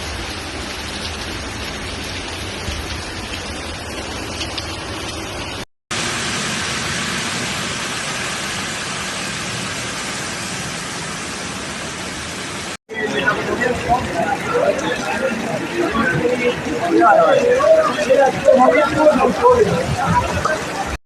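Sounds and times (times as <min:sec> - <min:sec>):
heavy rain: 0:00.0 - 0:21.0
running floodwater: 0:00.0 - 0:21.0.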